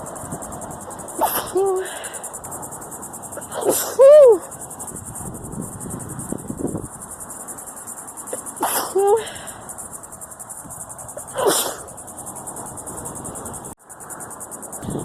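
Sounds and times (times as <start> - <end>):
woman sneezing: 1.2 - 2.1, 3.4 - 4.4, 8.6 - 9.4, 11.3 - 11.9.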